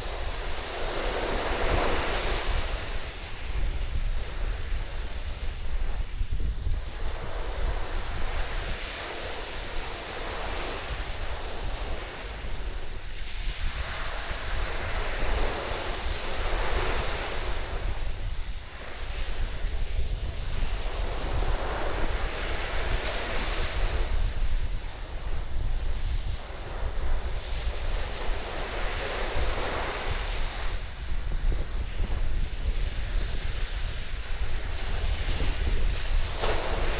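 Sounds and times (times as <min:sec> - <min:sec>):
surf breaking on sand: 0:00.0 - 0:36.9
wind buffeting microphone: 0:00.0 - 0:36.9.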